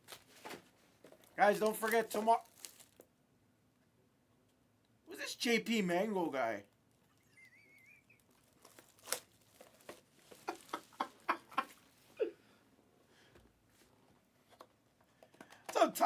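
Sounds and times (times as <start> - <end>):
card packs clicking and tapping: 0.0 - 3.0, 8.4 - 10.8, 14.6 - 15.9.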